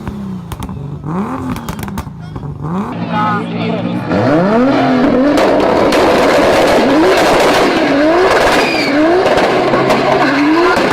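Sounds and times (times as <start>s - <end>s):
exhaust pops crackling: 0.0s - 3.0s, 4.8s - 10.9s
car engine revving hard: 0.0s - 10.9s.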